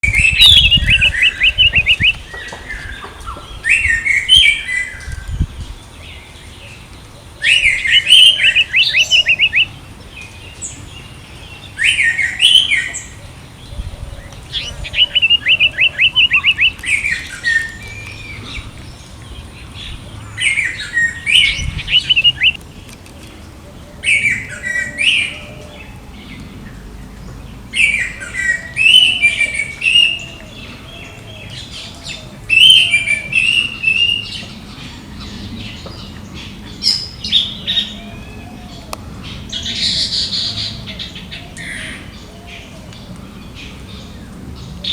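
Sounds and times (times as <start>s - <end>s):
thrush singing: 11.7s - 22.6s.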